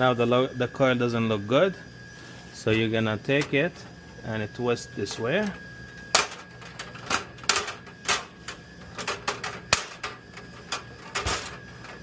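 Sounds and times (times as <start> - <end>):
metal coil clicking and clacking: 8.9 - 12.0.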